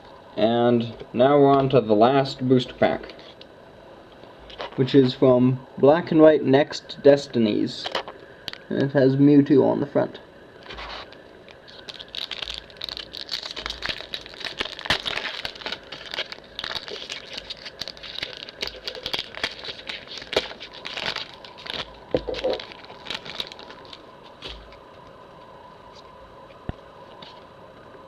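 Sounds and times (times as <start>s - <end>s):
foil wrapper tearing and crinkling: 10.8s - 24.8s.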